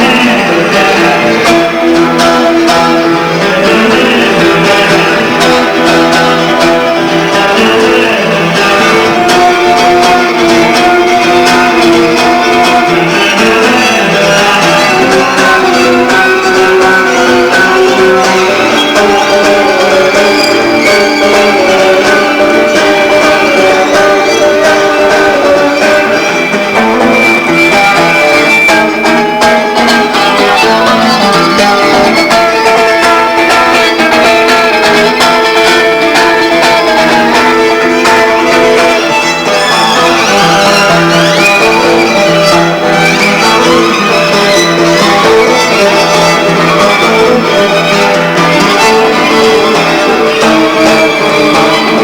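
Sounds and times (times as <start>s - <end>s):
guitar playing: 0.0s - 52.0s
violin bowing long notes: 0.0s - 52.0s.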